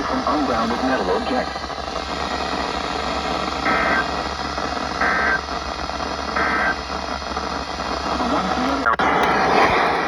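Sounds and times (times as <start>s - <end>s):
digital data bursts: 3.5s - 4.2s.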